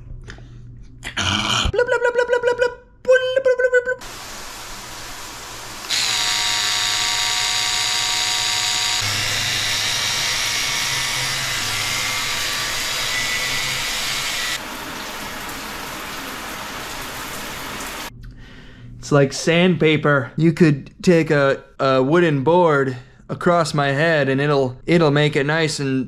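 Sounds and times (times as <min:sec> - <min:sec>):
small electric motor whirring: 0:05.8 - 0:14.6.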